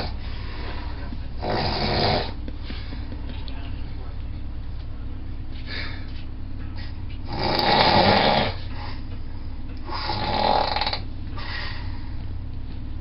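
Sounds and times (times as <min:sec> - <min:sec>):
person snoring: 0:00.9 - 0:02.4, 0:07.3 - 0:08.7, 0:09.9 - 0:11.0.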